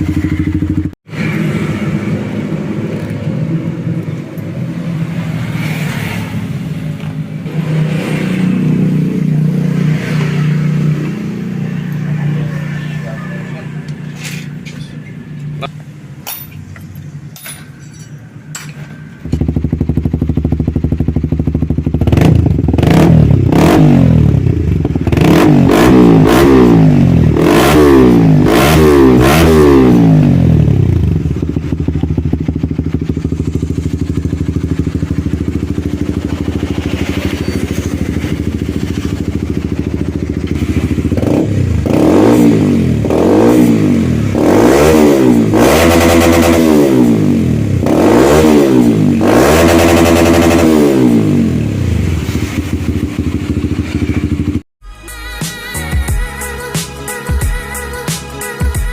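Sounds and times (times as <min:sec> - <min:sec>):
motorcycle engine idling: 0:00.0 - 0:00.9, 0:19.1 - 0:22.8, 0:30.6 - 0:41.8, 0:51.8 - 0:54.6
motorcycle engine revving: 0:00.0 - 0:15.6, 0:19.0 - 0:54.7.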